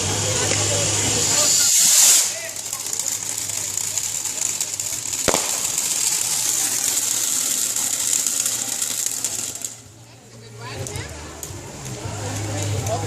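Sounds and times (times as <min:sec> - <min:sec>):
firework hissing: 0:00.0 - 0:10.4
sharp crack: 0:01.3 - 0:09.8.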